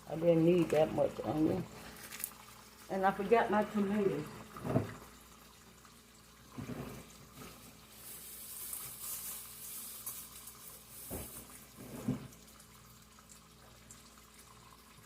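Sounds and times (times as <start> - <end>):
bacon sizzling in a frying pan: 7.7 - 11.9.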